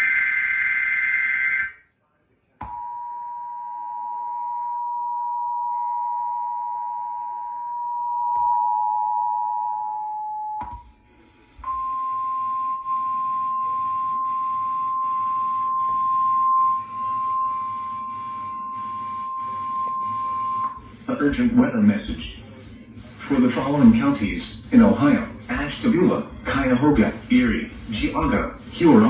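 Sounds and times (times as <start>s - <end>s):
two-tone alarm: 0.0s - 1.9s, 2.6s - 29.0s
single steady tone: 2.6s - 29.0s
faint noise: 10.8s - 29.0s.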